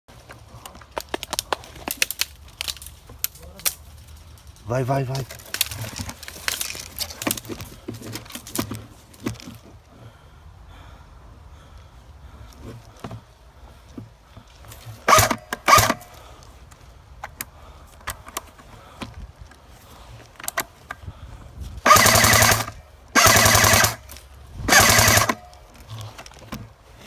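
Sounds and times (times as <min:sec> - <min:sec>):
airsoft gun bursts: 0:15.1 - 0:16.1, 0:21.8 - 0:24.1, 0:24.7 - 0:25.6.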